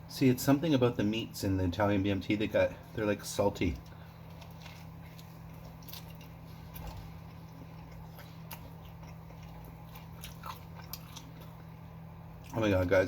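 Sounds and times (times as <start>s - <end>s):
low steady hum: 0.0s - 13.0s
person chewing: 3.8s - 11.8s.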